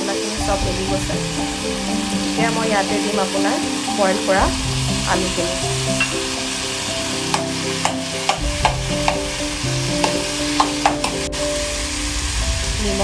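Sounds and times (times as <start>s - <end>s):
frying sizzle: 0.0s - 13.0s
spatula scraping and knocking pan: 5.9s - 6.4s, 7.2s - 11.4s.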